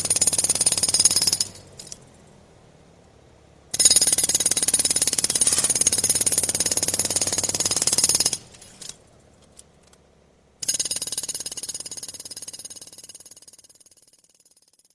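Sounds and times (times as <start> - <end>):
pneumatic jackhammer hammering: 0.0 - 2.0, 3.8 - 8.9, 10.6 - 14.0.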